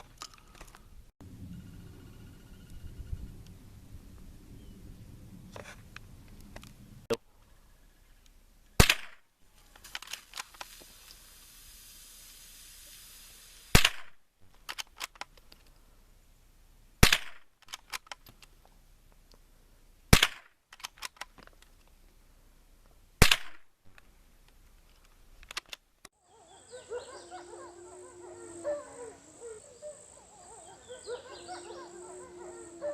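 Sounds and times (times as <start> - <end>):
steady high whine: 1.2 - 4.0
gunshots: 8.8 - 9.2, 13.7 - 14.2, 17.0 - 17.5, 20.1 - 20.5, 23.2 - 23.6
fainter cracks: 9.8 - 10.8.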